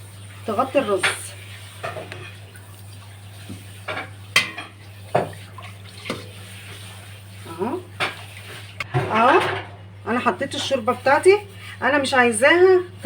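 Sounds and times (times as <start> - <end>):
utensils clinking against pot: 3.9 - 5.4.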